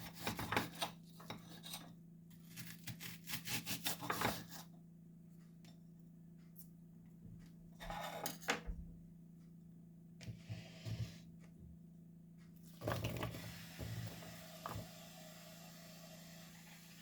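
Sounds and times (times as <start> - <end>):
kitchen scraping and rustling: 0.0 - 2.7, 7.8 - 8.6.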